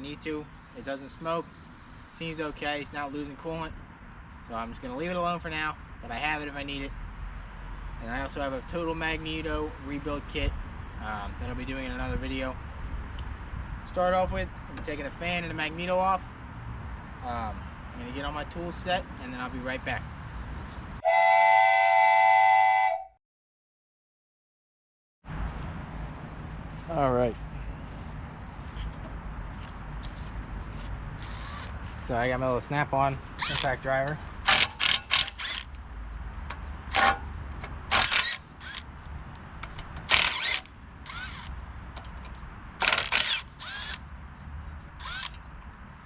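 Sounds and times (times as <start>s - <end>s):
held horn-like tone: 21.0s - 23.2s
impact driver bursts: 40.1s - 41.5s, 42.8s - 44.0s.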